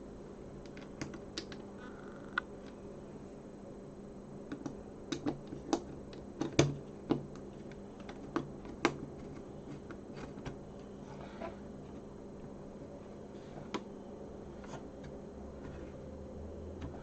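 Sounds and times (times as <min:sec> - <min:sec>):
plastic computer parts clicking: 0:04.5 - 0:10.6.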